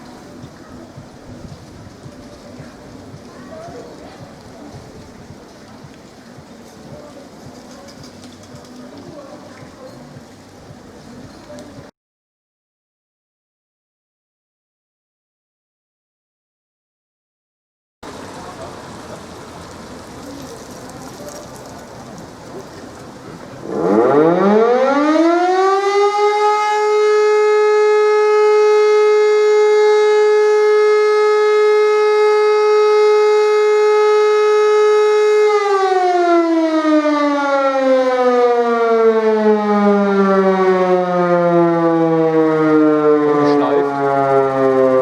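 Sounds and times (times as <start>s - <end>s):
electromechanical siren howling: 23.6s - 45.0s.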